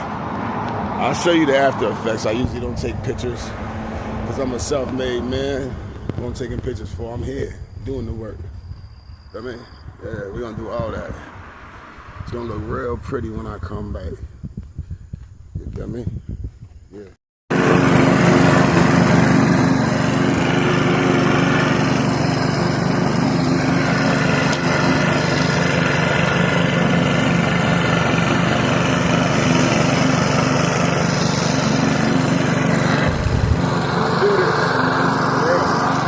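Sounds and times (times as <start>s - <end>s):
lawn mower engine running: 17.5s - 36.0s.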